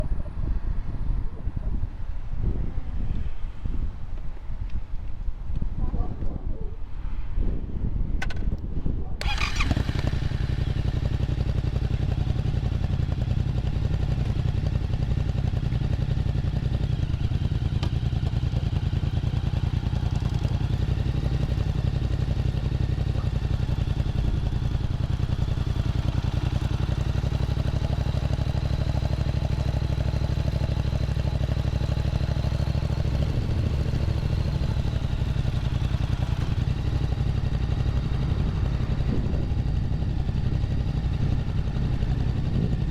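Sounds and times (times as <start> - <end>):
motorcycle engine starting and idling: 9.2 - 42.9.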